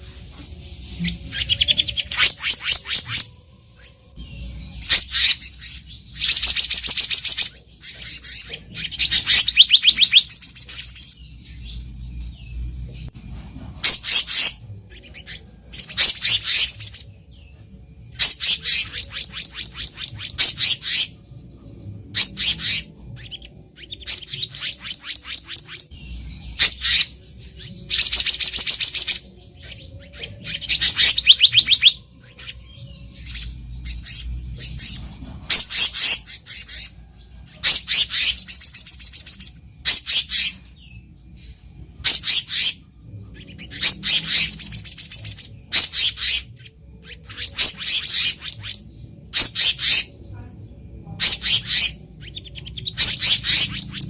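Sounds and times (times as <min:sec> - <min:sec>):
bird high-pitched chattering calls: 0:04.8 - 0:11.2, 0:27.9 - 0:32.6, 0:43.4 - 0:50.2, 0:51.2 - 0:54.0.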